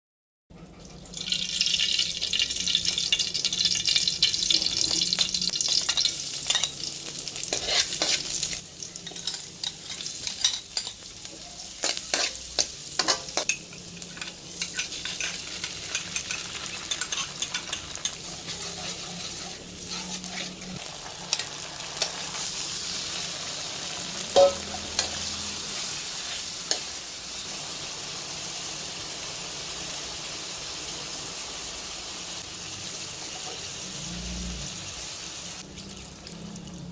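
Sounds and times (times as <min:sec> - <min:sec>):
food sizzling in hot oil: 0:01.0 - 0:36.9
utensil scraping a pan: 0:07.5 - 0:10.9, 0:11.8 - 0:20.8.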